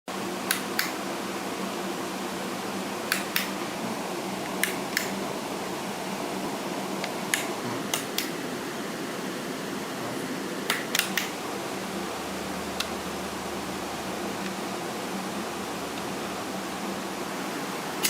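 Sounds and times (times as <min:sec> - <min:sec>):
steady hiss: 0:00.2 - 0:18.0
low hum: 0:11.3 - 0:17.9.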